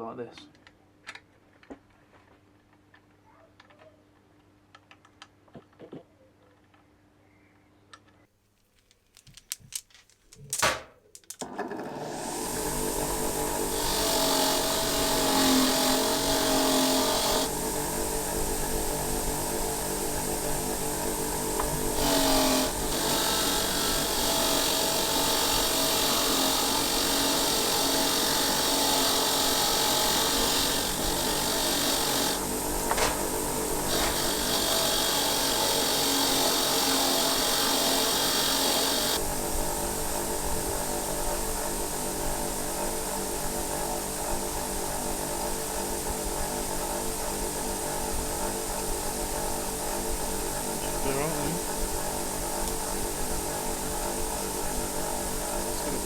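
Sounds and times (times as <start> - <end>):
electric power tool running: 11.4 - 56.0.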